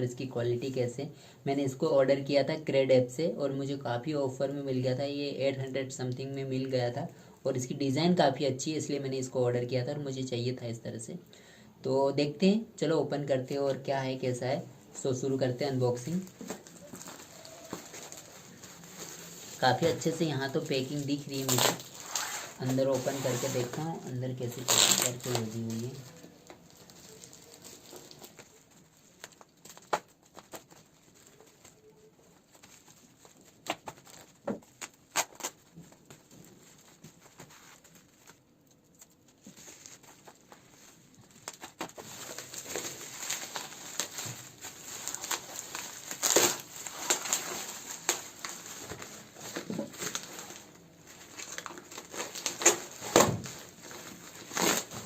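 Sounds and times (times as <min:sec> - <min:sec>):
packaging crinkling and tearing: 0:15.9 - 0:55.0.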